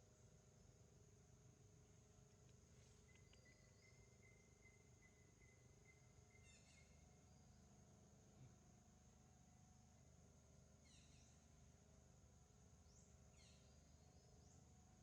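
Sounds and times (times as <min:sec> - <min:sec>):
high insect drone: 0:00.2 - 0:15.0
faint high chirping: 0:02.9 - 0:07.5.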